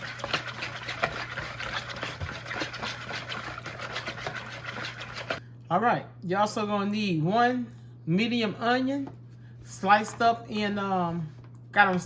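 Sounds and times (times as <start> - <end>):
whisk beating sauce in a bowl: 0.0 - 5.4.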